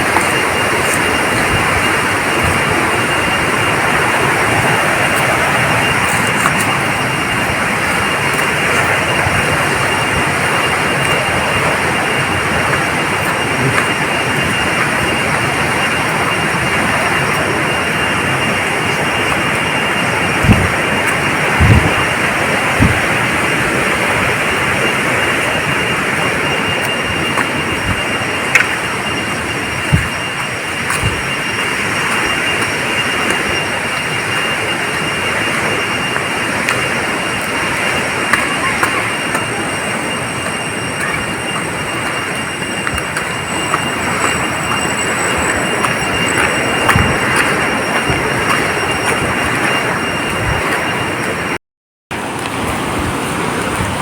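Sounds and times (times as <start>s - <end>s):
waterfall rushing water: 0.0s - 51.5s.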